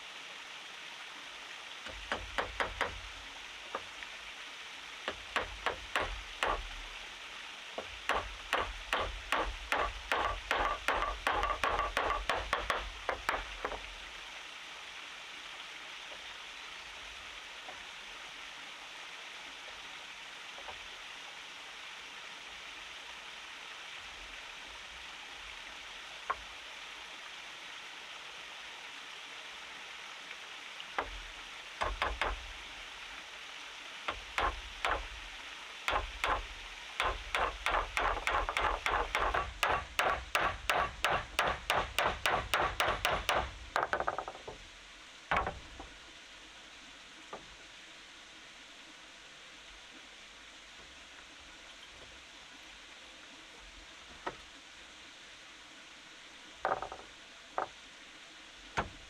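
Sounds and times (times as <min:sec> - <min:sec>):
steady rushing hiss: 0:00.0 - 0:59.0
tool striking wood: 0:01.9 - 0:03.1, 0:05.1 - 0:06.9, 0:07.8 - 0:13.9, 0:31.0 - 0:31.2, 0:31.8 - 0:32.5, 0:34.1 - 0:35.2, 0:35.9 - 0:44.6, 0:45.3 - 0:45.9.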